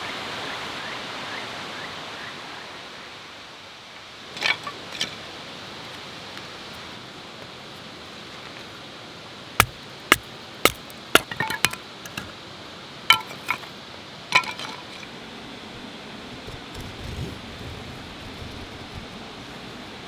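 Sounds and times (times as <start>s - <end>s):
metallic clinks and taps: 13.1s - 13.7s.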